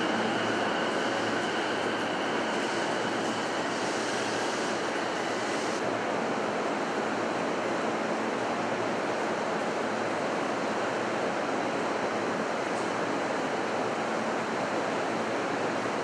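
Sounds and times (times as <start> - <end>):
electric train rushing: 0.0 - 5.8.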